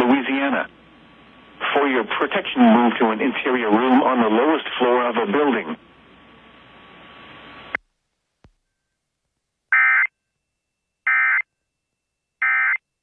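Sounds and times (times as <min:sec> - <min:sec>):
faint broadcast hiss: 0:00.0 - 0:09.8.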